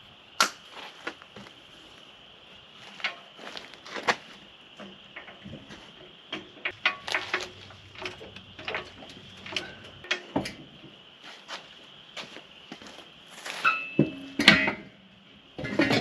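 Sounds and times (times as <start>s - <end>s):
tools clinking and knocking: 6.3s - 10.9s, 13.6s - 14.8s, 15.6s - 16.0s
faint steady high tone: 13.6s - 15.2s.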